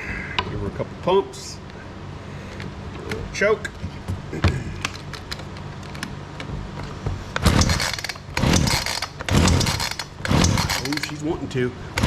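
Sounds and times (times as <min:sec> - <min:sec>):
chainsaw recoil starter pulls: 0:07.4 - 0:11.3
engine turning over: 0:07.4 - 0:11.3.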